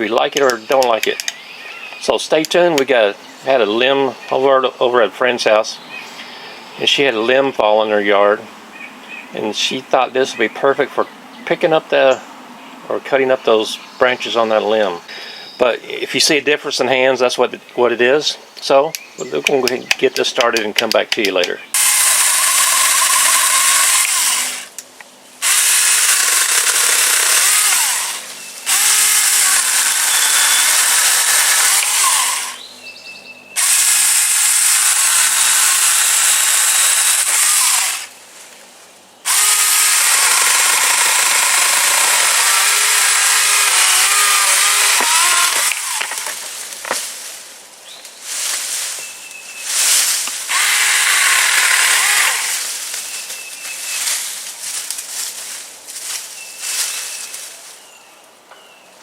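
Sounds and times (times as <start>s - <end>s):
electric chainsaw cutting branches: 21.8s - 24.8s, 25.4s - 32.6s, 33.6s - 38.2s, 39.3s - 47.1s, 49.7s - 55.3s.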